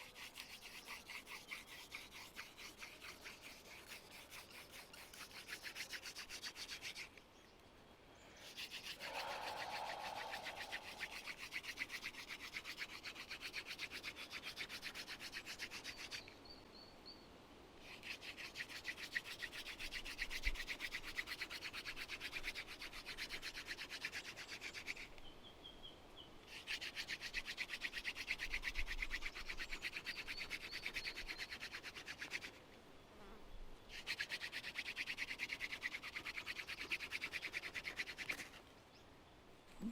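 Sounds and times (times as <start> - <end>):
wooden spindle rubbing on board: 0.0 - 7.1, 8.5 - 16.0.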